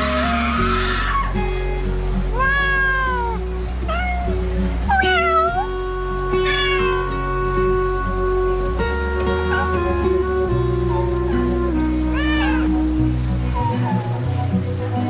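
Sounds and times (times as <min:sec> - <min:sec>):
cat meowing: 0:02.3 - 0:08.3, 0:09.2 - 0:10.2, 0:12.1 - 0:12.7
background music with beat: 0:03.4 - 0:15.0.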